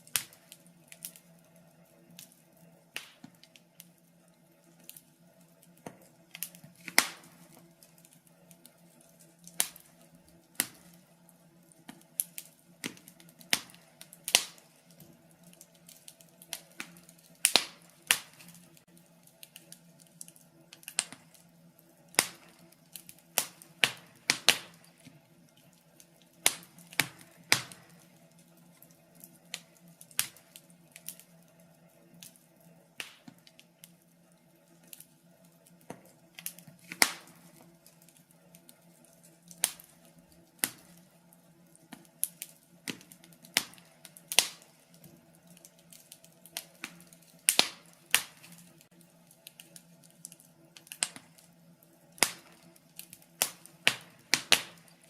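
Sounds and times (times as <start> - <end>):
faint steady hum: 0.0 - 55.0
wood fire crackling: 0.0 - 55.0.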